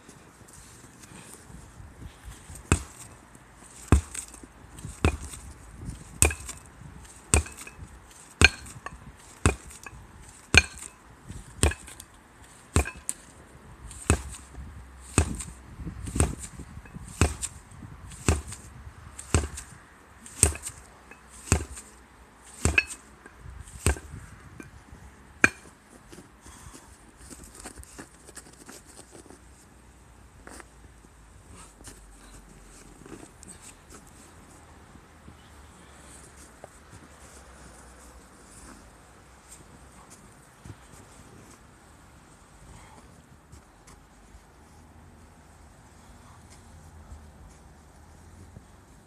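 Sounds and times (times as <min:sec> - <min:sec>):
sledgehammer striking a tire: 0:02.6 - 0:03.1, 0:03.8 - 0:12.0, 0:12.7 - 0:13.2, 0:13.9 - 0:21.9, 0:22.5 - 0:23.1, 0:23.7 - 0:24.8, 0:25.4 - 0:25.7.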